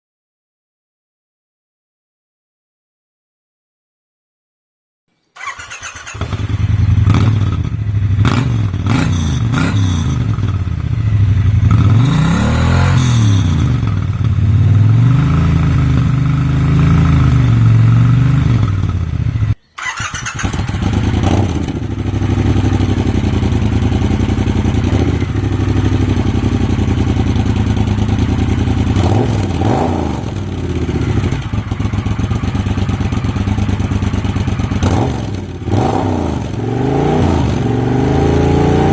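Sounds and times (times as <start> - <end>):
motorcycle engine idling and revving: 5.4 - 38.9.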